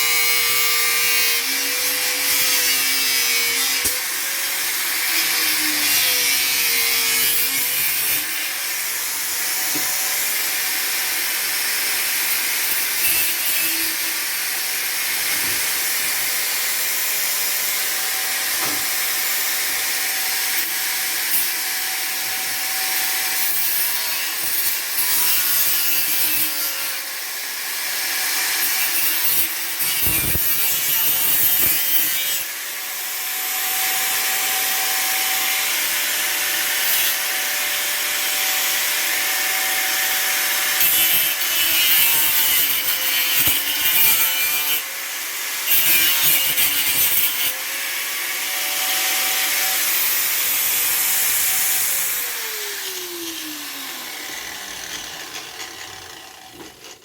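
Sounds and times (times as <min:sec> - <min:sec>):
electric power saw cutting: 0:00.0 - 0:57.0.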